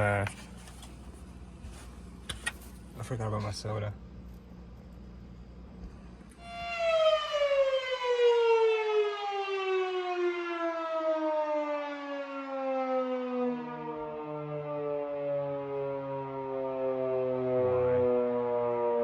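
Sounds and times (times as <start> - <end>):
descending synth tone: 6.4 - 11.8, 14.1 - 19.0.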